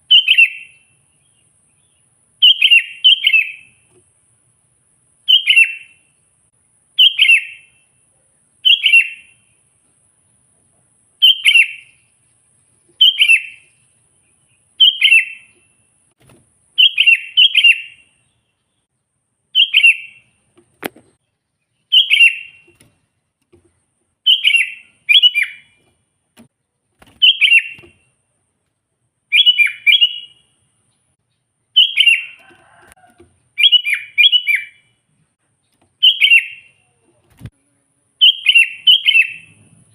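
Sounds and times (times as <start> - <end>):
bulbul calling: 0.0 - 0.9, 1.8 - 3.8, 5.3 - 6.0, 7.0 - 7.8, 8.6 - 9.4, 11.2 - 12.1, 12.9 - 13.8, 14.5 - 15.6, 16.8 - 18.5, 19.5 - 20.3, 20.9 - 22.9, 23.6 - 25.8, 27.1 - 28.0, 29.3 - 35.0, 35.6 - 37.5, 38.2 - 39.7.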